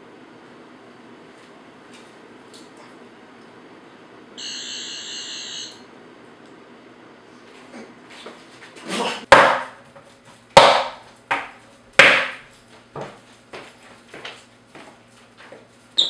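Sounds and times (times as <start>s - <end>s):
hard knocks on wood: 9.3s - 9.8s, 10.6s - 12.4s.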